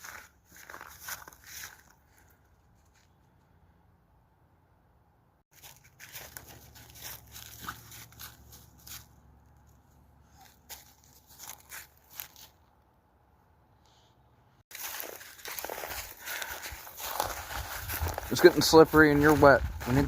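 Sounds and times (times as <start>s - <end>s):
snow crunching: 0.0s - 3.0s, 5.5s - 9.2s, 14.7s - 20.0s.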